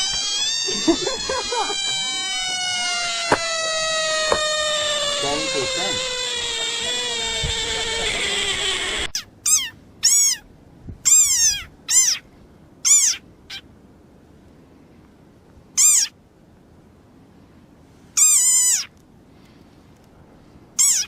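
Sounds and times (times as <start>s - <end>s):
long wavering falling wail: 0.0s - 9.0s
small animal squeaky calls: 0.0s - 10.4s, 11.0s - 12.3s, 12.9s - 13.6s, 15.8s - 16.1s, 18.2s - 18.9s, 20.8s - 21.0s.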